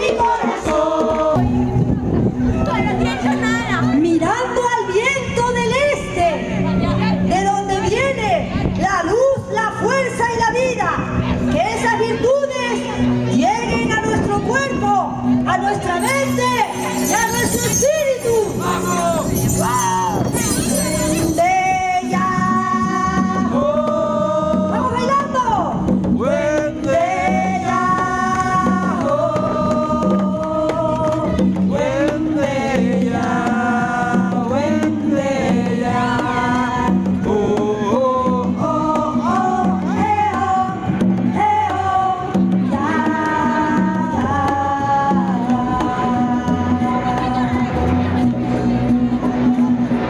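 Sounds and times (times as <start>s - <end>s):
voices singing held notes: 16.0s - 24.5s.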